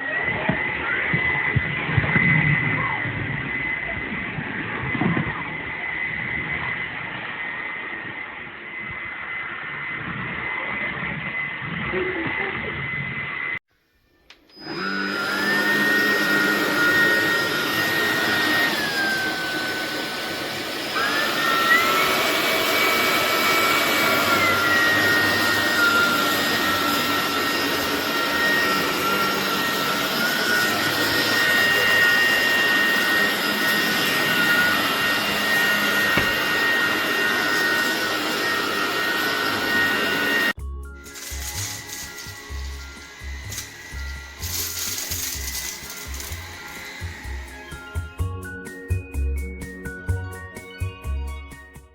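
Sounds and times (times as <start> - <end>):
vacuum cleaner whining: 0.0 - 13.6, 14.2 - 50.7.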